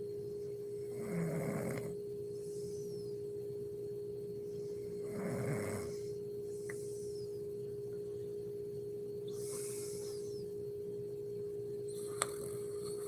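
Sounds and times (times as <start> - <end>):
steady hum: 0.0 - 13.0
woman snoring: 0.8 - 2.0, 4.8 - 7.0.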